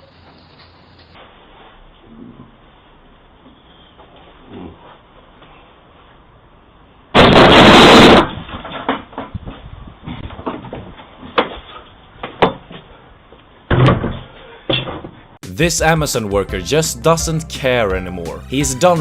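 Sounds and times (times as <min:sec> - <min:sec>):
loud crash: 0:07.2 - 0:08.6.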